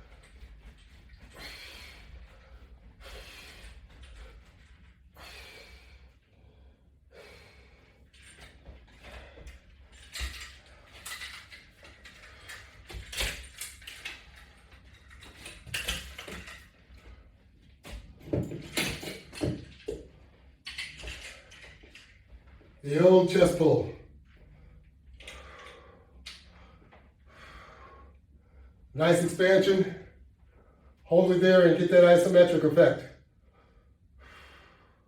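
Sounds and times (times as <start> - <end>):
man breathing hard: 1.1 - 13.1, 24.4 - 28.9, 33.4 - 35.0.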